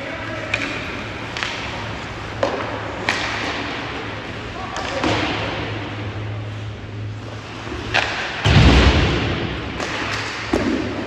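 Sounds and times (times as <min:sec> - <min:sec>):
steady low hum: 0:00.0 - 0:11.0
stick and puck clicks: 0:00.4 - 0:03.7, 0:09.8 - 0:10.8.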